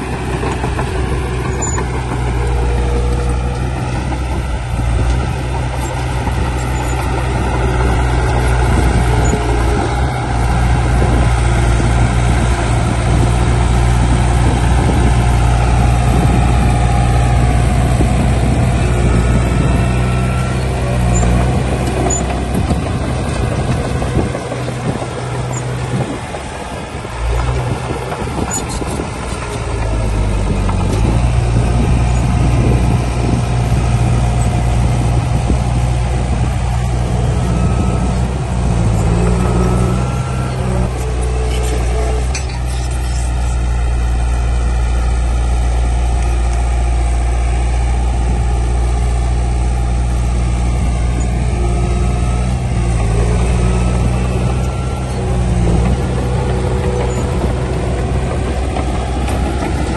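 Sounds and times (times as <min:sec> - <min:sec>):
heavy diesel machinery running: 0:00.0 - 0:59.9.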